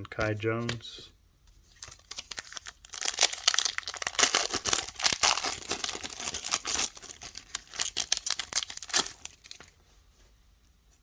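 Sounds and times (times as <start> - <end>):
foil wrapper crinkling and tearing: 1.7 - 9.8.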